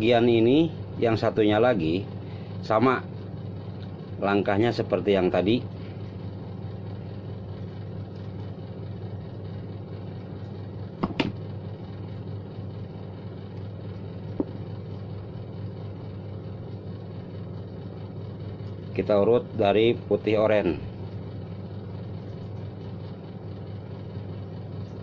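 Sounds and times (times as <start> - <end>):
low background hum: 0.0 - 25.0.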